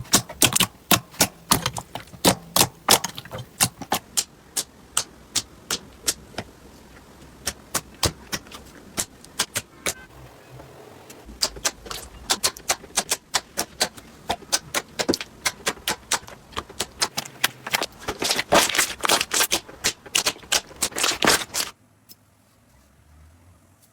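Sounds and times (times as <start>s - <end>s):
slime popping and crackling: 0.0s - 6.4s, 11.3s - 21.7s.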